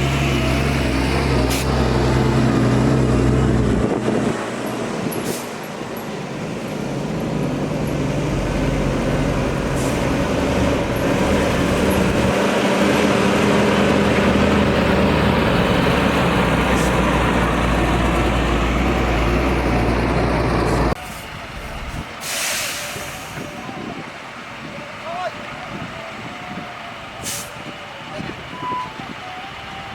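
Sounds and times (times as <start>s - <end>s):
heavy diesel engine running: 0.0s - 29.9s
short hisses: 21.9s - 23.5s.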